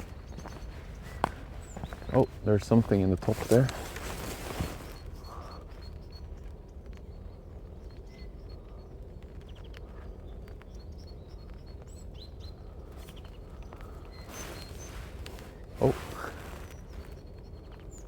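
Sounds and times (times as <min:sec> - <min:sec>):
songbirds chirping: 0:00.0 - 0:18.0
whistled glides: 0:14.1 - 0:16.8.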